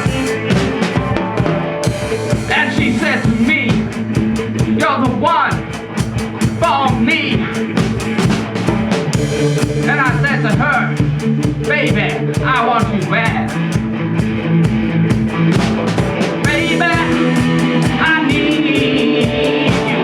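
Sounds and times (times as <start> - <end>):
bass: 0.0 - 20.0
drum kit beat: 0.0 - 20.0
wavering lead line: 13.5 - 20.0.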